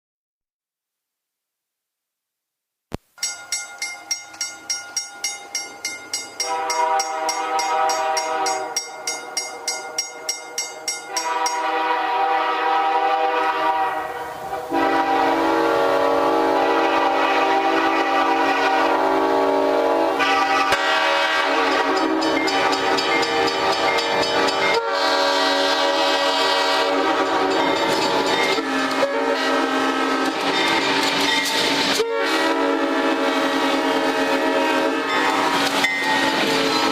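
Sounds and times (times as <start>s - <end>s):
train horns chord: 6.4s - 10.4s, 11.0s - 36.9s
rhythmic clatter: 21.5s - 24.8s, 27.0s - 29.0s.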